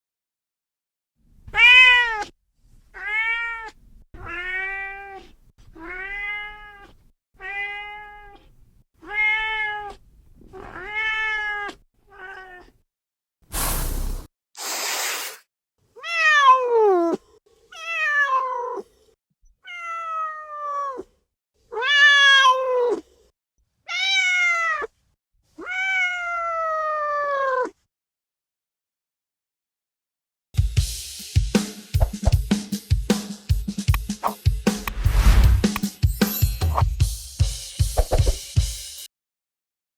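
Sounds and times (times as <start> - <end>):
cat meowing: 1.5 - 12.8, 16.0 - 18.8, 19.6 - 21.0, 21.7 - 23.0, 23.9 - 24.9, 25.6 - 27.8
short bursts of noise: 13.5 - 15.4.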